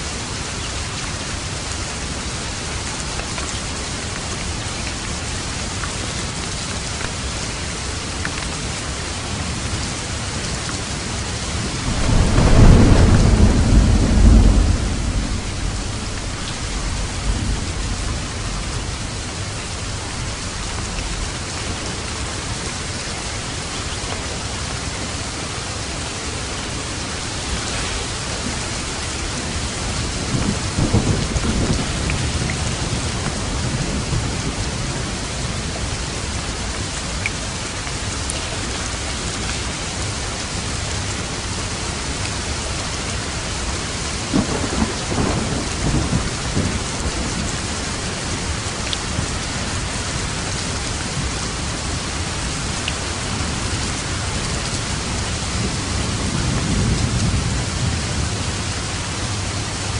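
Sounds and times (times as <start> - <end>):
heavy rain hissing: 0.0 - 59.9
thunder rumbling: 11.4 - 23.7, 25.7 - 35.9, 44.1 - 59.8.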